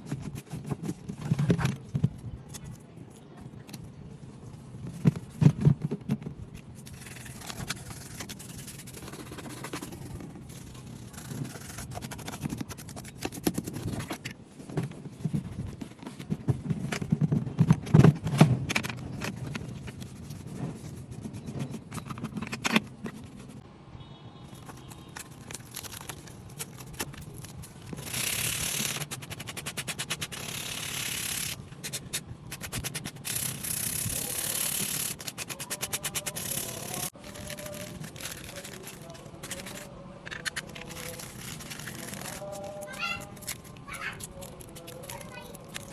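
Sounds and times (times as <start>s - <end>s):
scrubbing hiss: 28.0s - 39.9s.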